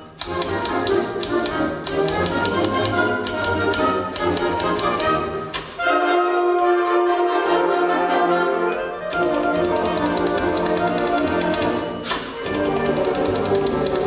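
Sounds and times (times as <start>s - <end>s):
wind band playing: 0.0s - 14.0s
typewriter keystrokes clicking: 0.2s - 5.8s, 9.1s - 14.0s.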